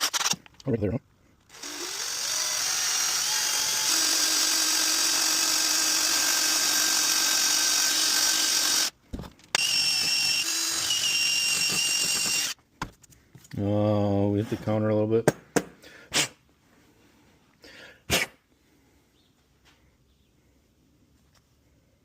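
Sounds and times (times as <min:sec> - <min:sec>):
power drill running: 0:01.5 - 0:09.0, 0:09.6 - 0:12.6.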